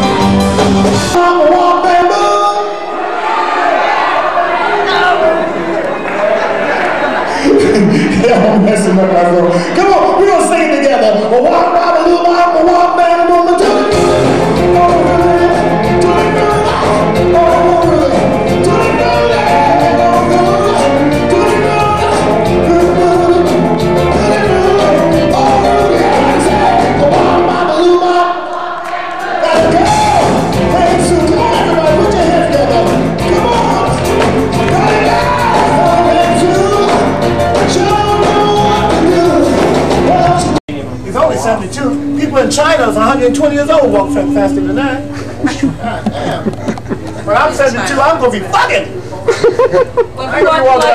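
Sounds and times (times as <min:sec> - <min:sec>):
rock and roll band playing: 0:00.0 - 0:02.8, 0:07.0 - 0:46.9
person singing: 0:12.7 - 0:28.6, 0:29.2 - 0:40.6.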